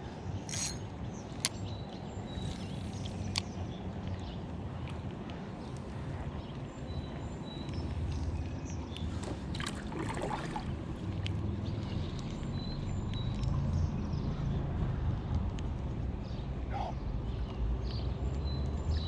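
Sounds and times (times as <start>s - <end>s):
wind: 0.0s - 19.0s
splashing and rustling: 9.0s - 12.4s.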